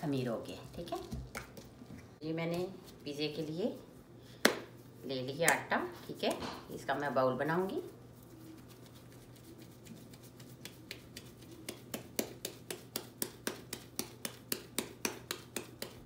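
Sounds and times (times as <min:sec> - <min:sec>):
hands slapping dough: 0:04.4 - 0:06.8, 0:08.2 - 0:16.0.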